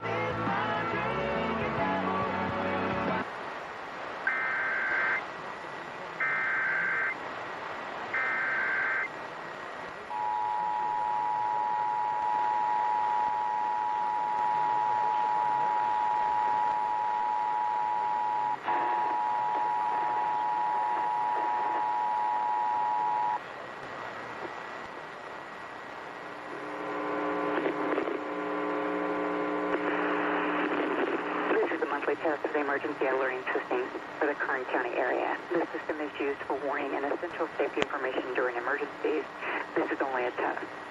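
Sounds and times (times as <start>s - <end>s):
faint hiss: 3.2s - 40.9s
screeching data bursts: 4.3s - 5.2s, 6.2s - 7.2s, 8.2s - 9.1s
two-tone attention signal: 10.1s - 23.4s.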